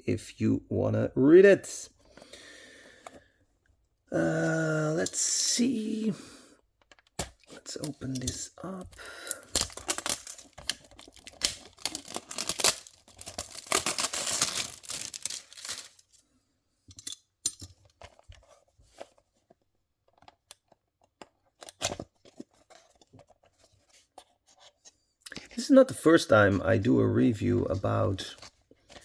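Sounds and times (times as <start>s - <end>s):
box clicks and scrapes: 7.4s - 16.0s
packaging tearing and crinkling: 9.2s - 16.1s.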